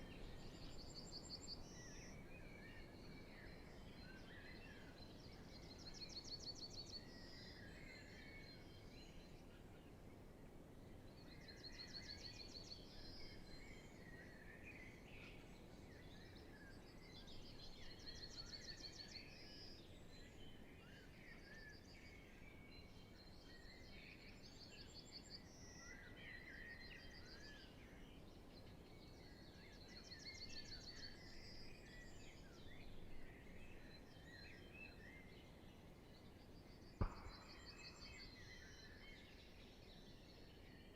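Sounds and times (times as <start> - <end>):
dawn chorus of songbirds: 0.0 - 40.9.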